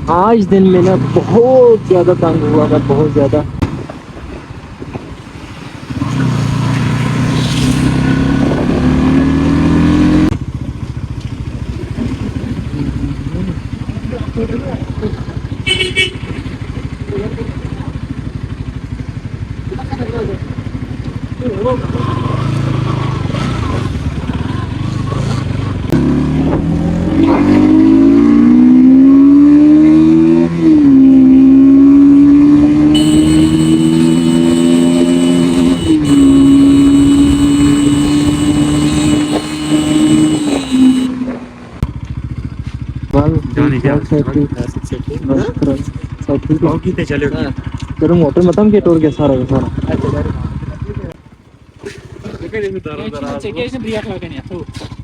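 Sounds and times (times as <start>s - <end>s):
motorcycle engine accelerating: 5.9s - 18.2s, 19.0s - 43.9s
motorcycle engine rising in pitch: 31.6s - 41.4s
pulsing engine note: 32.9s - 41.2s.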